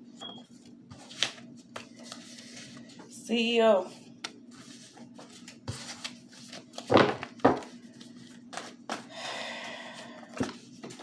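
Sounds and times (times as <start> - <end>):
cards rustling: 1.0 - 3.1, 4.2 - 9.1.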